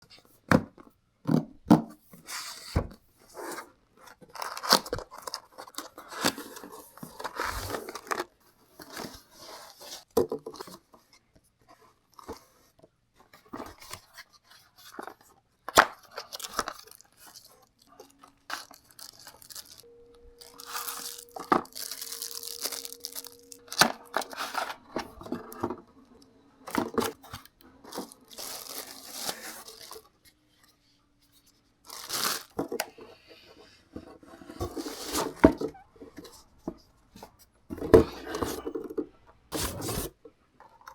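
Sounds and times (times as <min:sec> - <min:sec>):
wrapping tearing and crinkling: 0:04.2 - 0:08.3, 0:15.8 - 0:25.7, 0:26.7 - 0:30.2, 0:31.8 - 0:32.8
faint steady hum: 0:16.2 - 0:31.9.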